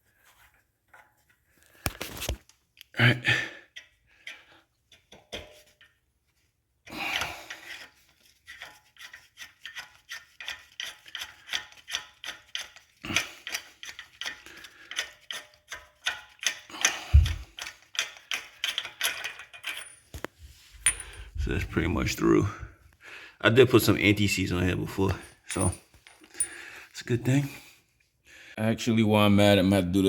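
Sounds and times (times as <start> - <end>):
metal clicking and scraping of tools: 3.7 - 6.0, 6.8 - 21.5, 24.9 - 26.8.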